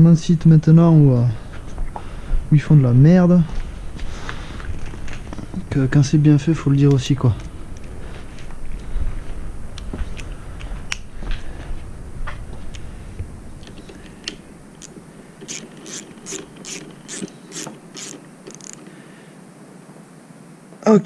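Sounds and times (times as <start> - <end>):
ratchet strokes: 14.8 - 18.8.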